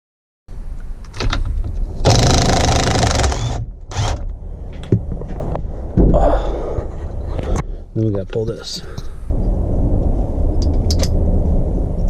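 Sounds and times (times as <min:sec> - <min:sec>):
power tool motor bursts: 0:02.0 - 0:04.2.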